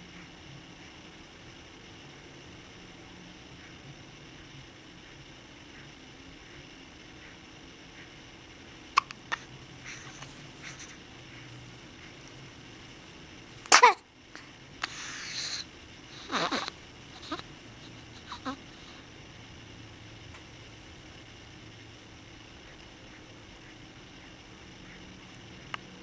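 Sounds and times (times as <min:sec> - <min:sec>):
breathy noise: 0:08.9 - 0:19.2
person hiccuping: 0:09.0 - 0:09.5, 0:13.7 - 0:14.0.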